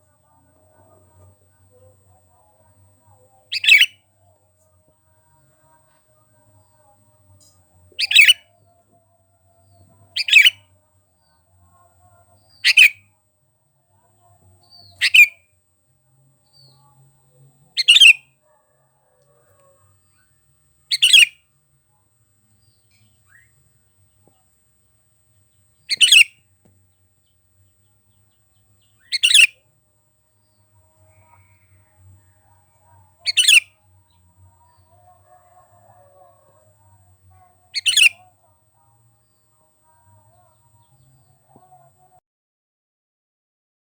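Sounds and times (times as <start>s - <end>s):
bird short sharp calls: 25.9s - 26.3s, 29.0s - 29.5s.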